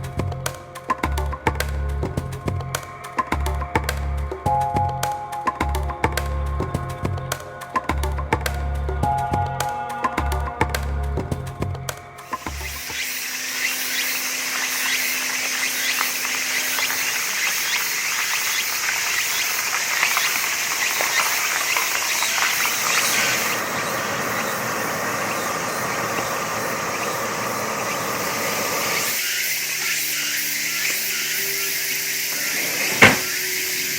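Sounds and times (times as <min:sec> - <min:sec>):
insects chirring: 0:12.1 - 0:33.9
low insect trill: 0:12.2 - 0:33.9.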